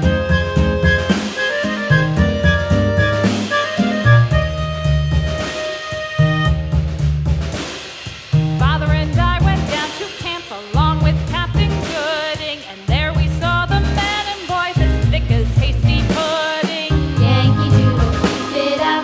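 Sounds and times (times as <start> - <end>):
ornamented vocal song: 0.0 - 3.9, 8.8 - 19.0
steady bass beat: 0.0 - 7.6, 8.4 - 9.8, 10.8 - 11.9, 12.9 - 14.1, 14.8 - 16.1, 16.9 - 18.5.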